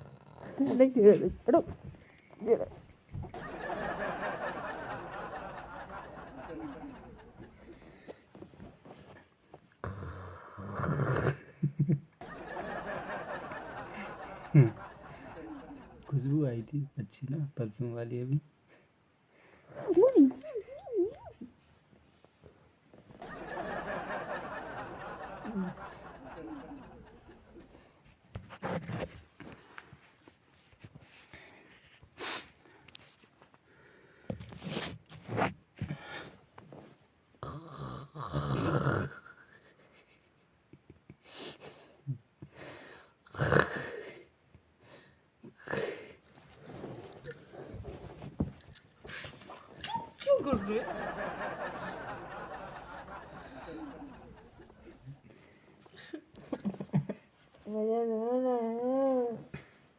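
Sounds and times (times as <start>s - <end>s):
faint steady hiss: 0.0s - 37.6s.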